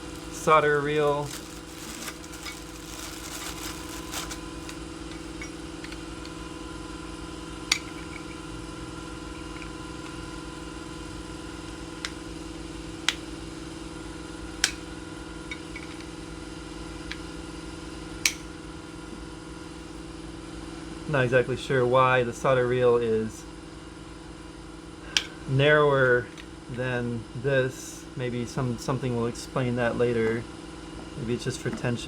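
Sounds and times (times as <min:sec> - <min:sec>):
steady machine hum: 0:00.0 - 0:21.6.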